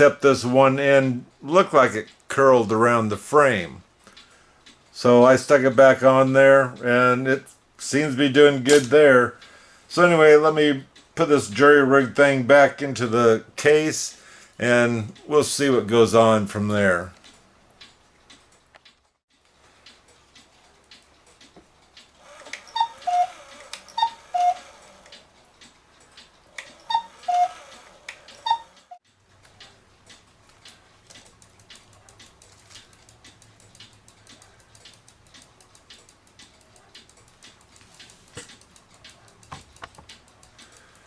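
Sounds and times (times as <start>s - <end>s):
clock ticking: 0.0s - 41.0s
cuckoo clock calling: 20.2s - 31.0s.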